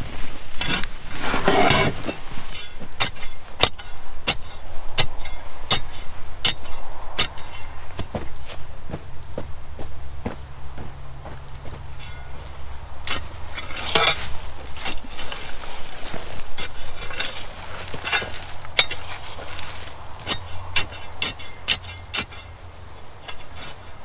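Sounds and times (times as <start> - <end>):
spade scraping in dirt: 0.0 - 24.0
low engine hum: 6.9 - 15.5.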